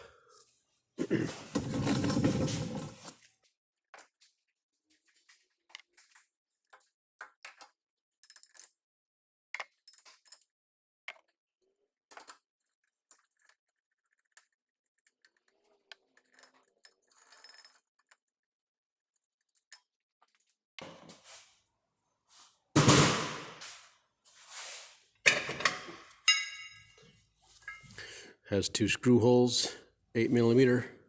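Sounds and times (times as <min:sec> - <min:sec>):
metal scraping and rasping: 0:01.5 - 0:03.1.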